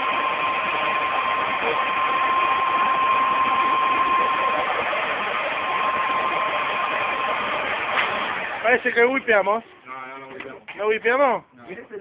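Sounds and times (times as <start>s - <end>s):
electric blower rushing air: 0.0s - 9.4s
blower motor whine: 0.0s - 9.8s.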